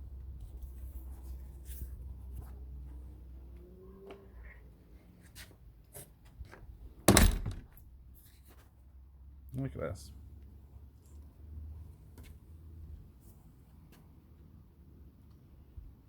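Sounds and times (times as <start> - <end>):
door shutting with a thunk: 7.1 - 7.8.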